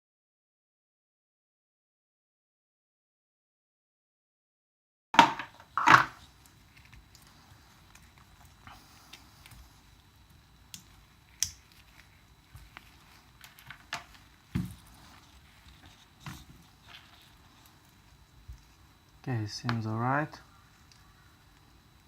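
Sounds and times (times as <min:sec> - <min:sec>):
dull thump: 0:14.5 - 0:14.8.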